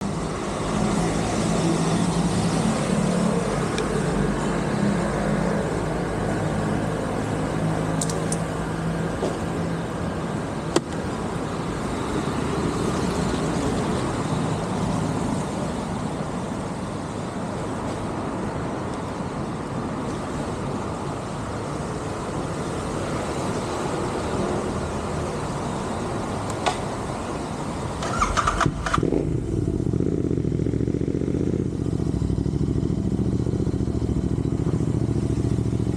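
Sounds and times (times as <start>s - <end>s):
wind and road noise: 0.0s - 35.9s
motorcycle engine running: 28.2s - 35.9s.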